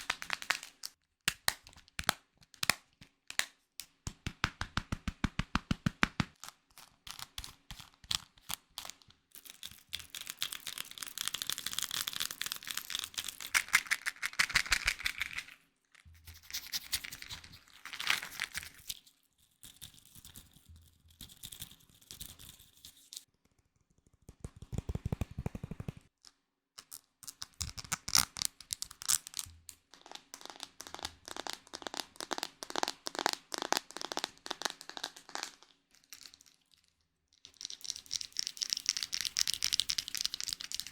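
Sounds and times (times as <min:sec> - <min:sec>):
crinkling and scratching: 0:06.4 - 0:23.6.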